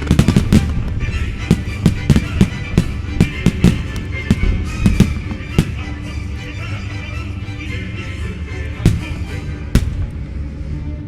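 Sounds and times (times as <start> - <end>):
firework shells bursting: 0.0 - 6.0
music: 0.0 - 11.0.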